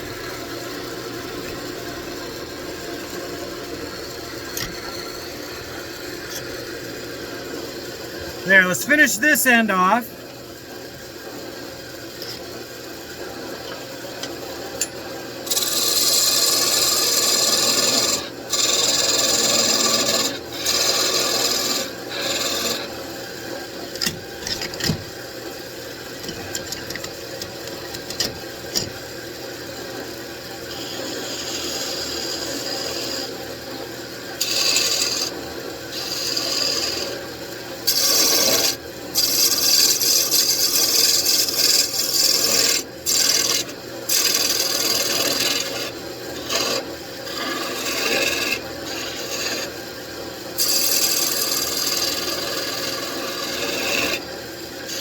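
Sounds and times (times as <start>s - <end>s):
chisel hissing cuts on wood: 15.5s - 22.9s, 30.8s - 33.3s, 34.4s - 35.4s, 36.0s - 37.2s, 37.9s - 49.7s, 50.6s - 54.2s
wood lathe running: 15.5s - 23.0s, 30.7s - 33.3s, 34.4s - 37.2s, 37.9s - 49.8s, 50.6s - 54.2s.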